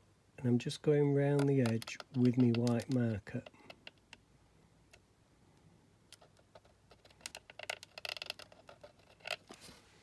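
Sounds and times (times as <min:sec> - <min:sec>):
plastic template clicks and taps: 0:01.4 - 0:04.2
scratchy rub: 0:06.2 - 0:09.9.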